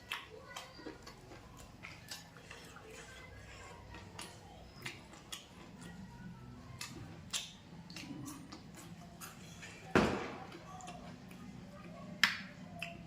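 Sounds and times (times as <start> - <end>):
wet chewing: 0.0 - 13.0
mouth-smacking clicks: 12.2 - 13.0.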